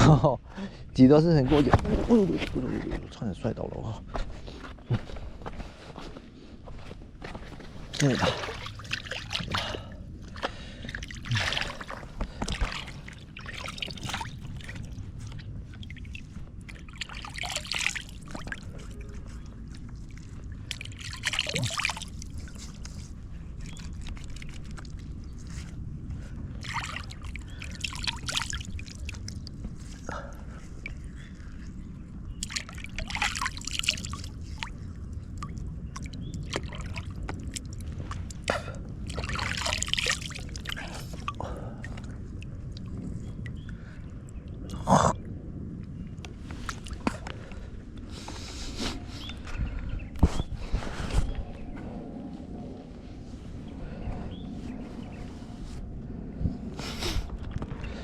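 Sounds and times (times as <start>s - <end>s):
steady low rumble: 0.0s - 58.0s
water splashing and trickling: 7.6s - 45.2s, 46.2s - 48.3s.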